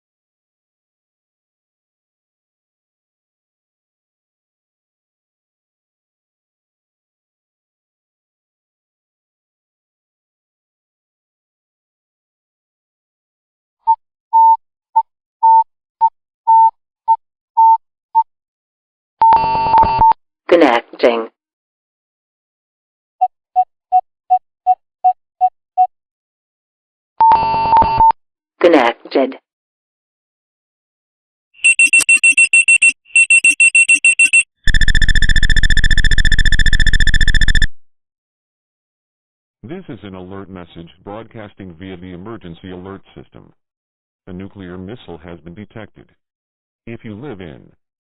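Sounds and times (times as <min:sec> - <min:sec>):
electronic alert beeps: 0:31.6 - 0:37.8.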